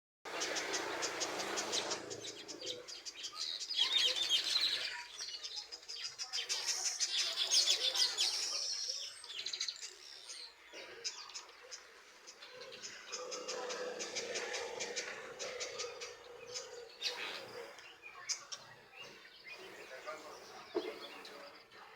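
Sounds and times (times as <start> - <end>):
birds chattering: 0.3 - 21.9.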